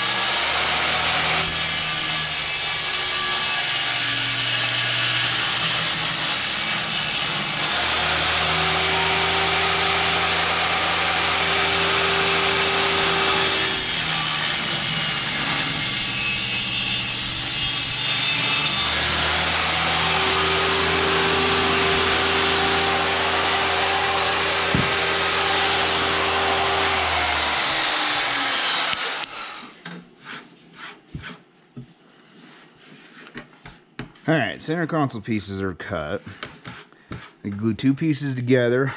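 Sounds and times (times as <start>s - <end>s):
power saw cutting wood: 0.0s - 29.8s.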